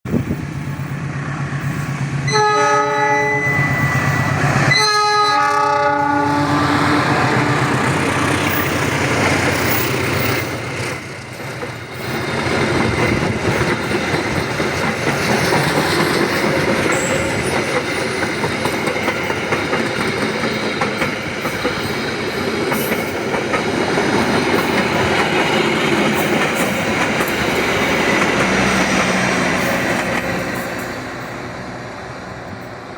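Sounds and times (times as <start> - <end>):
train rumble and wheel clatter: 0.0 - 32.9
locomotive horn blasts: 2.3 - 6.8.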